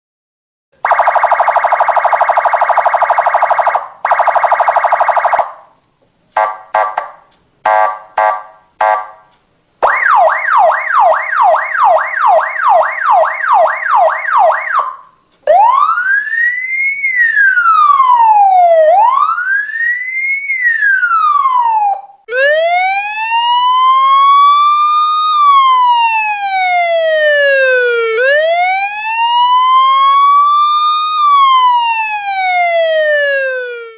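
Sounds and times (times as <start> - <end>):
electronic police siren: 0.8 - 5.6, 9.8 - 33.9
siren horn blasts: 6.4 - 16.6.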